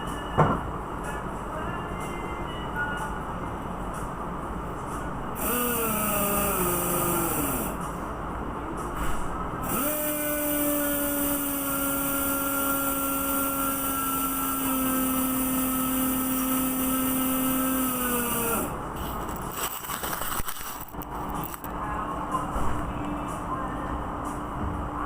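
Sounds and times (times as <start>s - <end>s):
motor-driven tool whining: 5.4s - 7.8s, 9.6s - 21.6s.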